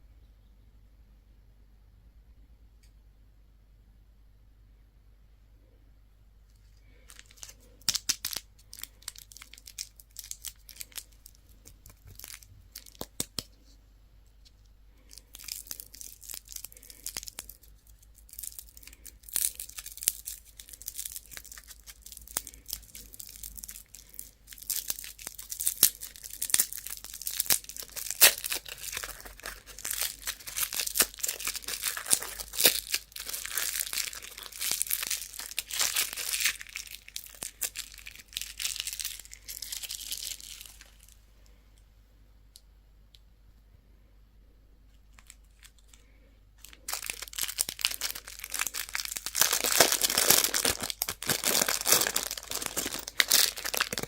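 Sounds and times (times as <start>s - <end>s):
candy wrappers crinkling and tearing: 6.6s - 13.5s, 15.0s - 41.2s, 45.0s - 54.0s
wrapper clicks and crackles: 6.6s - 13.5s, 14.5s - 41.2s, 45.0s - 54.0s.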